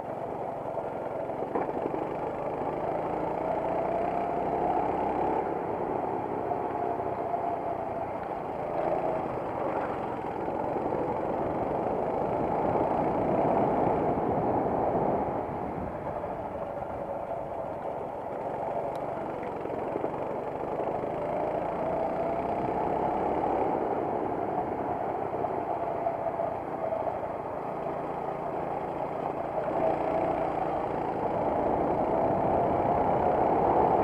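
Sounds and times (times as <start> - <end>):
kart engine accelerating: 0.0 - 34.0.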